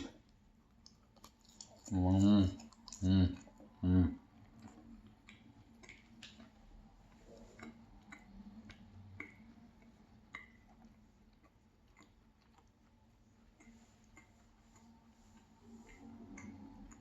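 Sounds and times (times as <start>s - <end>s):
mouth clicks from chewing: 7.6s - 12.8s, 13.6s - 17.0s.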